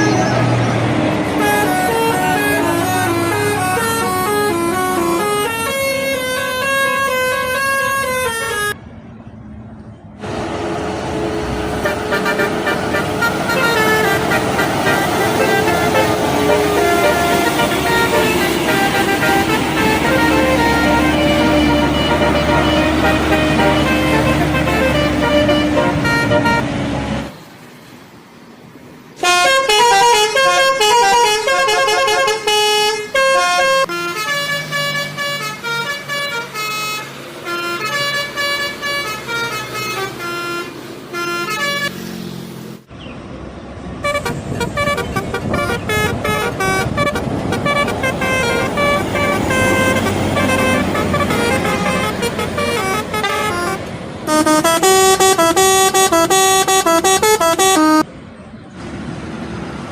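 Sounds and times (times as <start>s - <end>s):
bus air horns playing tunes: 1.3s - 8.8s, 11.6s - 27.3s, 29.2s - 42.0s, 44.0s - 58.1s.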